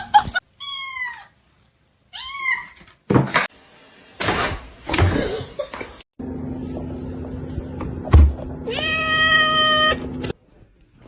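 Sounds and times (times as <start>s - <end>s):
cat meowing: 8.7s - 10.0s.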